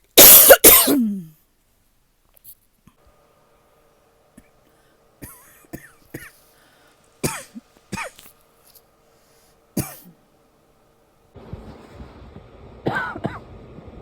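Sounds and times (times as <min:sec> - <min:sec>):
person coughing: 0:00.2 - 0:01.4, 0:05.2 - 0:06.4, 0:07.2 - 0:08.3, 0:09.8 - 0:10.2, 0:12.9 - 0:13.4.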